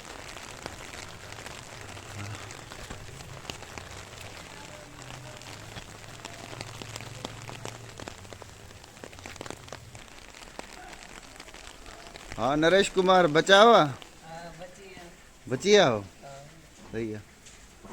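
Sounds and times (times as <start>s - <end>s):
rain hiss: 0.0s - 17.9s
raindrops ticking on surfaces: 0.0s - 17.9s.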